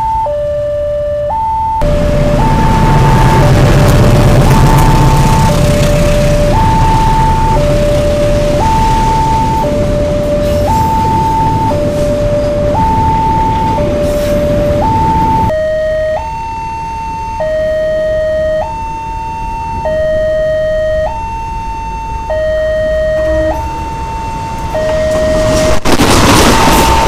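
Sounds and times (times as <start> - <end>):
level-crossing warning siren: 0.0 - 27.0
steady rumble: 1.8 - 15.5.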